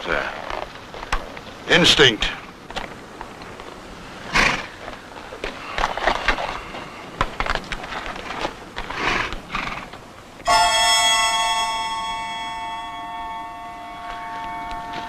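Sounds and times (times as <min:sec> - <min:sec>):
horse whinnying: 0:04.3 - 0:04.8, 0:09.0 - 0:10.8
dramatic orchestral chord: 0:10.5 - 0:15.0.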